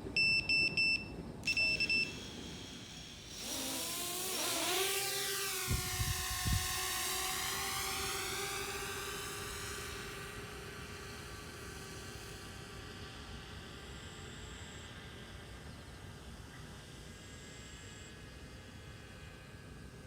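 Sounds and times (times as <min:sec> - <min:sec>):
two-tone electronic beeps: 0:00.2 - 0:02.2
drone motors whining: 0:01.4 - 0:19.6.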